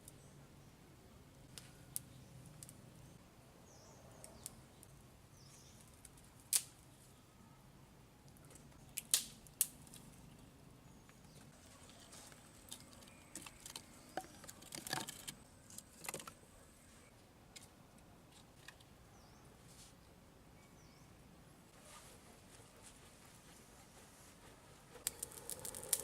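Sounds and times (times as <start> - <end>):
faint bird chirps: 20.5 - 21.2.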